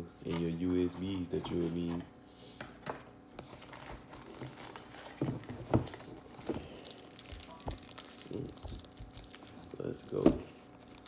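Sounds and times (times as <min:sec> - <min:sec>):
packaging rustling and crinkling: 0:03.4 - 0:11.0.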